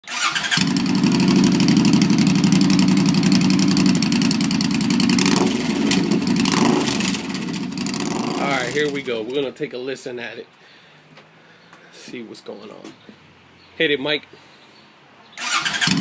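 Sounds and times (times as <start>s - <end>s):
motorcycle engine running: 0.5s - 9.0s.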